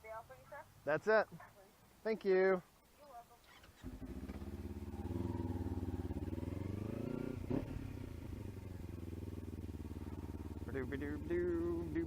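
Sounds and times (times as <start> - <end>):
motorcycle engine running: 3.8 - 12.0.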